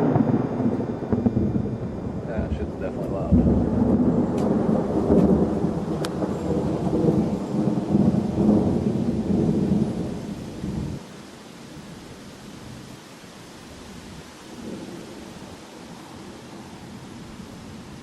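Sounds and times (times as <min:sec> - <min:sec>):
thunder rumbling: 0:00.0 - 0:11.1, 0:14.0 - 0:18.0
rain hiss: 0:00.0 - 0:18.0.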